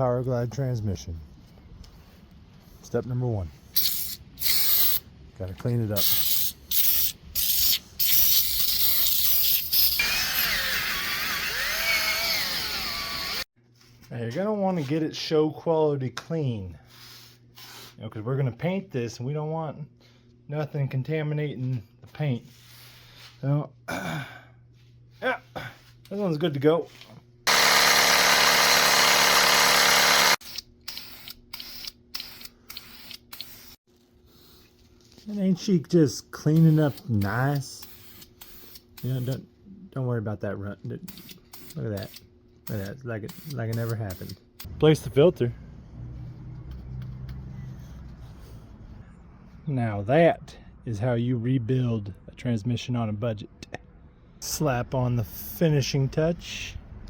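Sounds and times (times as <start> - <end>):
spray paint hissing: 3.7 - 5.0, 6.0 - 10.0, 27.5 - 33.8, 37.8 - 39.3, 41.1 - 44.4
spray can hissing: 3.8 - 5.0, 6.0 - 10.0, 30.9 - 33.8.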